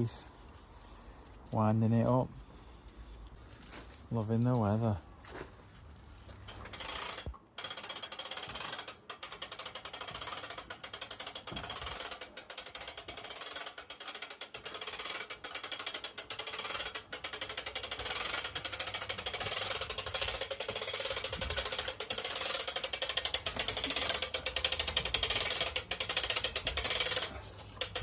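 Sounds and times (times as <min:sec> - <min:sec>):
winch ratchet clicking: 0:06.5 - 0:28.0.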